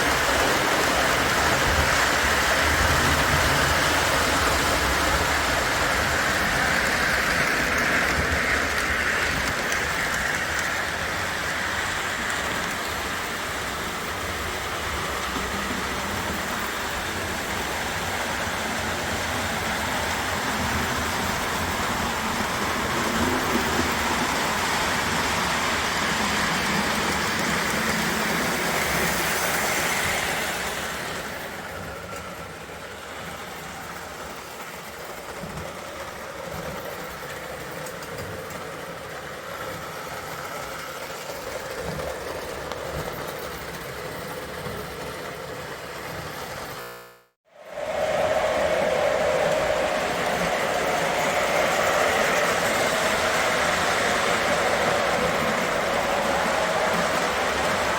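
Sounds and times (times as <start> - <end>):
model train clattering: 0.0 - 18.4, 31.7 - 46.8, 47.8 - 57.9.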